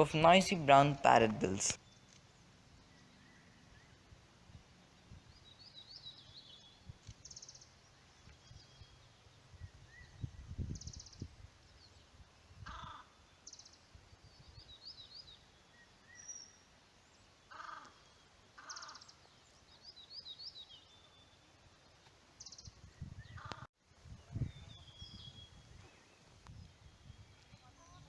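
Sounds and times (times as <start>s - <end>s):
faint bird chirps: 1.8s - 4.1s, 4.8s - 28.0s
birds calling harshly: 12.6s - 13.8s, 17.5s - 21.4s, 22.4s - 23.7s.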